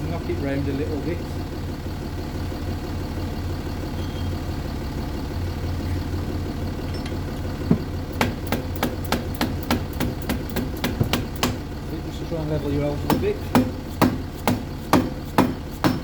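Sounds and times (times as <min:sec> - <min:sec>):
car engine idling: 0:00.0 - 0:16.0
metal hammer tapping: 0:13.1 - 0:16.0.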